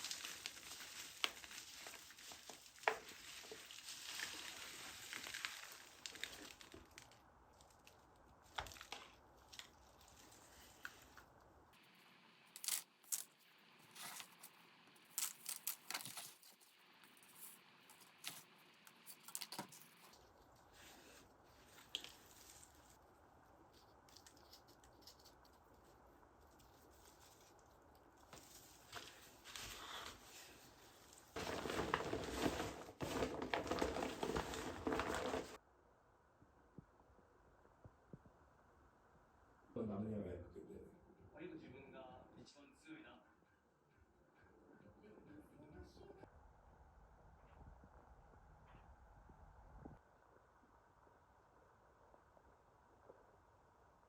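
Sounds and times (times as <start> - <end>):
small objects clicking and rustling: 0.0 - 11.3.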